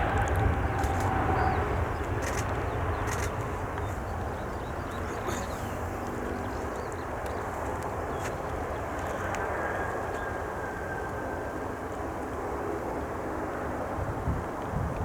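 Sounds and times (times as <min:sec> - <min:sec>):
jet engines rumbling: 0:00.0 - 0:15.0.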